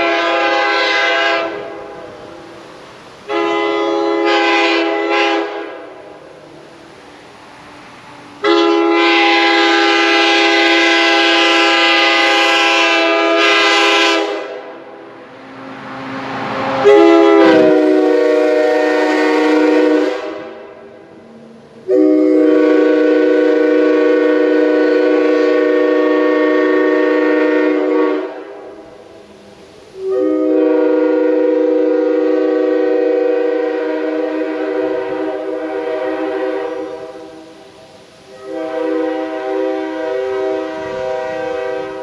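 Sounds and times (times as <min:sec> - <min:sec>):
train horn chord blasts: 0:00.0 - 0:02.0, 0:03.3 - 0:06.0, 0:08.4 - 0:14.9, 0:16.8 - 0:20.9, 0:21.8 - 0:28.8, 0:30.0 - 0:37.6, 0:38.3 - 0:42.0.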